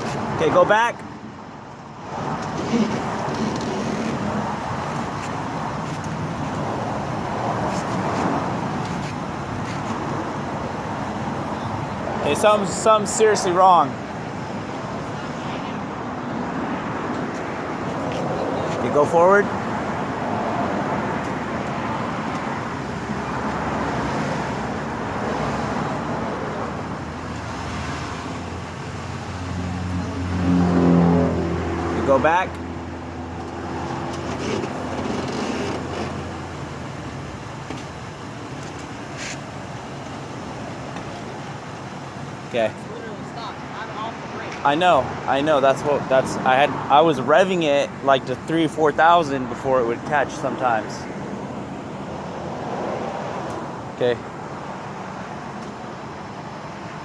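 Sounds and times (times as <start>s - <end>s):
car engine straining: 0.0s - 57.0s
brake caliper grinding in wheel: 2.2s - 6.7s, 33.4s - 36.6s.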